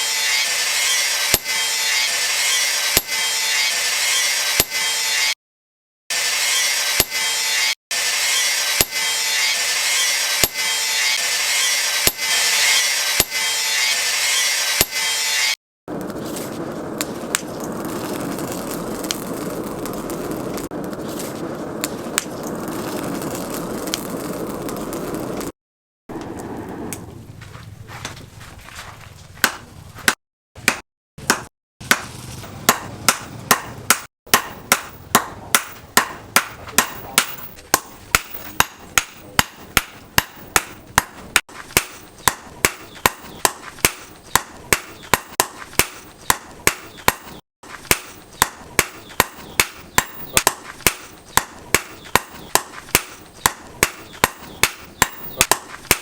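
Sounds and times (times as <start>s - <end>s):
hammer striking steel on anvil: 1.1s - 1.8s, 4.4s - 5.0s, 6.8s - 7.4s, 8.7s - 9.2s, 10.0s - 13.6s, 14.6s - 15.2s, 30.6s - 32.1s, 32.7s - 56.0s.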